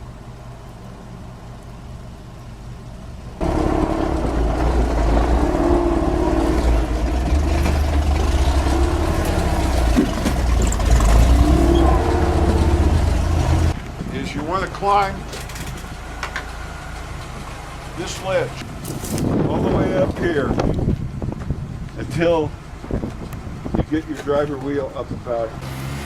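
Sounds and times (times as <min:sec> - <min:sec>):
engine revving: 0:03.4 - 0:13.8, 0:25.5 - 0:26.0.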